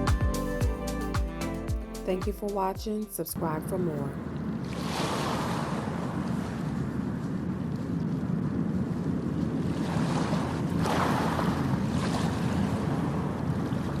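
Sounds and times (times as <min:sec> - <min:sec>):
wind rumbling on microphone: 0:03.9 - 0:14.0
ocean surf washing onto beach: 0:04.2 - 0:14.0.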